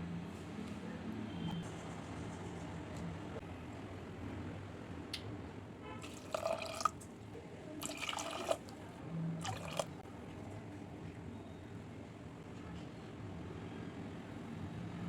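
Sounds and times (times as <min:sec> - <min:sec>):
liquid pouring into pot: 0:06.0 - 0:07.0, 0:07.8 - 0:08.8, 0:09.4 - 0:10.0.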